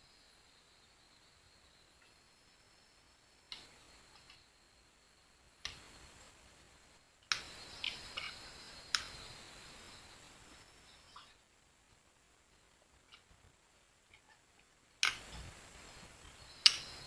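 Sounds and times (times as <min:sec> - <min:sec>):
sharp clicks and knocks: 0:15.0 - 0:15.5.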